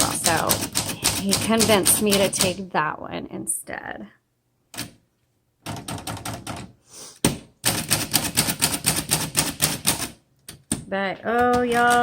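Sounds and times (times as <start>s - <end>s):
manual typewriter typing: 0.0s - 2.6s, 5.6s - 6.7s, 7.6s - 10.7s, 11.4s - 12.0s.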